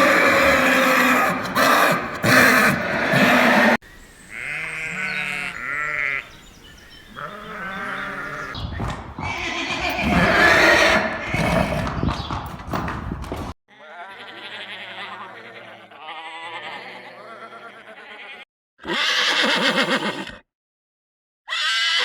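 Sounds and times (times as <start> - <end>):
farm animals bleating: 0.0 - 8.6, 9.2 - 11.6, 13.7 - 19.9.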